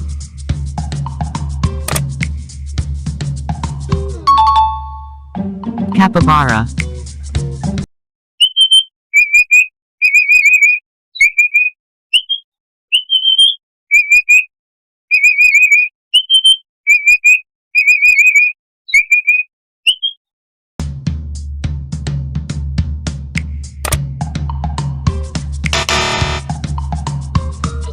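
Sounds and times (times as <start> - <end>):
capybara whistling: 8.4 - 14.5, 15.1 - 20.2.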